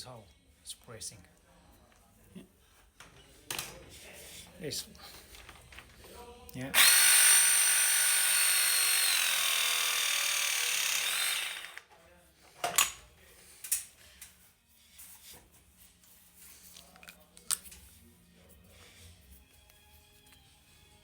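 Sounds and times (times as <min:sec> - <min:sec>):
pipe press motor whine: 0:06.8 - 0:11.8.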